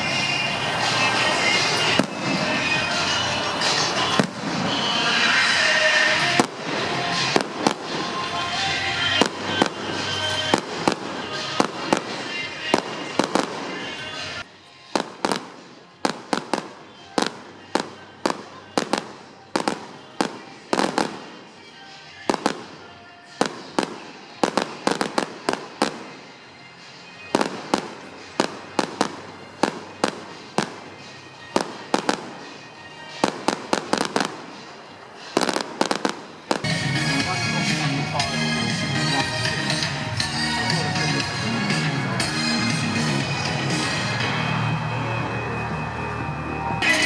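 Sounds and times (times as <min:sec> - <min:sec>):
fireworks bangs: 0:00.0 - 0:14.4, 0:15.0 - 0:26.2, 0:27.2 - 0:36.8.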